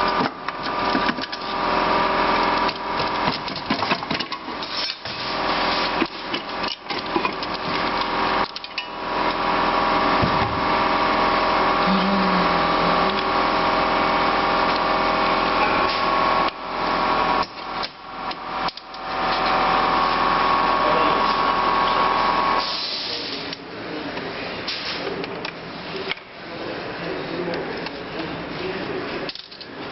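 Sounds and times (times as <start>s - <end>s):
power tool motor running: 7.8s - 22.7s.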